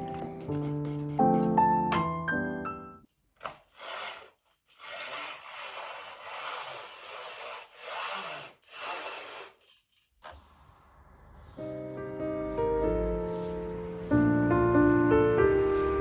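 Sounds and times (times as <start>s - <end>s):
rough scraping strokes: 3.7s - 9.6s.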